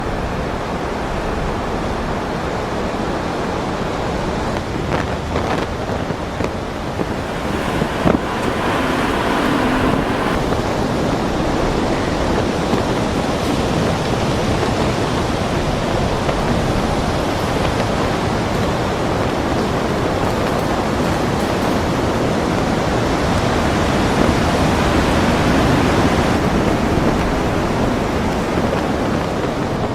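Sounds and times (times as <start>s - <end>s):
wind buffeting microphone: 5.0s - 11.6s, 12.3s - 29.9s
heavy waves breaking: 6.6s - 10.9s, 21.6s - 29.9s.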